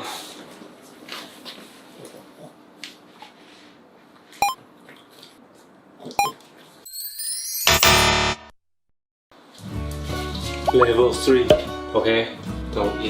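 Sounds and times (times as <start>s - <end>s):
short electronic beeps: 10.7s - 10.9s.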